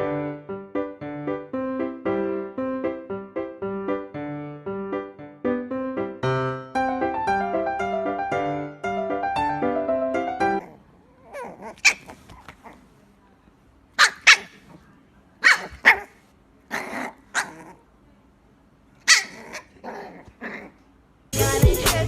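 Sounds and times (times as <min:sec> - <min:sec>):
dog barking: 0:14.0 - 0:14.8, 0:15.4 - 0:17.7, 0:19.0 - 0:20.2.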